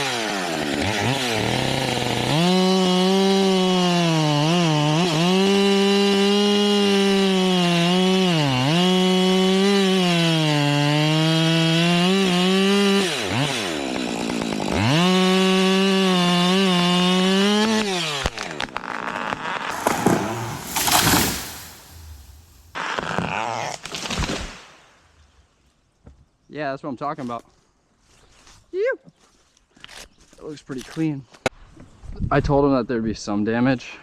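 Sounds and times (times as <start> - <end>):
chainsaw cutting wood: 0.0 - 25.3.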